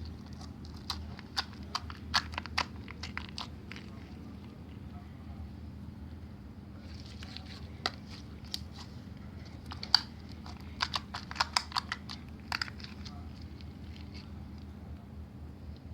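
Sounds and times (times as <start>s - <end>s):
slime crackling and popping: 0.0s - 4.0s, 9.5s - 14.3s.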